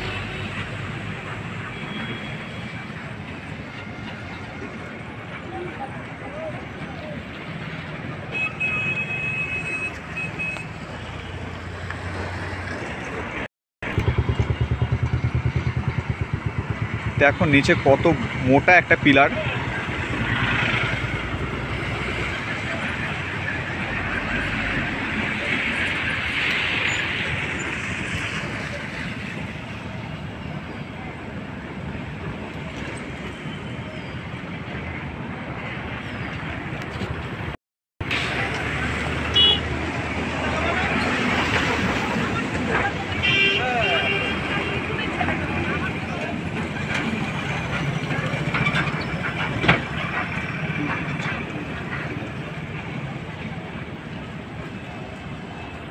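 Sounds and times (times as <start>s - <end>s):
road traffic passing: 0.0s - 55.9s
vehicle engine humming: 9.2s - 28.0s.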